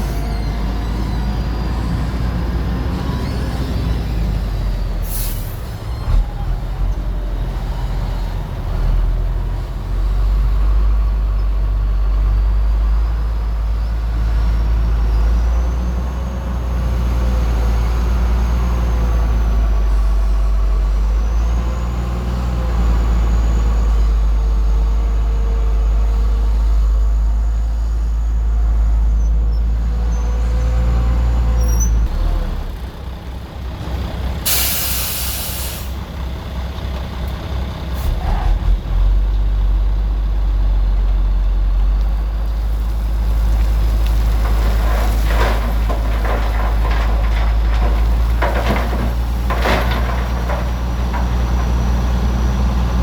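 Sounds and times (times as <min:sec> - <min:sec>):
hiss of released air: 0:34.5 - 0:36.0.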